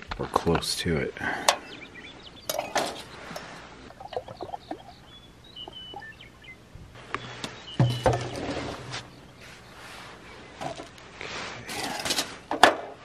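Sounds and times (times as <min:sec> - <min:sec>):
bird chirps: 0:01.3 - 0:10.7
camp cookware clicking and knocking: 0:02.5 - 0:03.0
cookware clatter: 0:02.5 - 0:03.0.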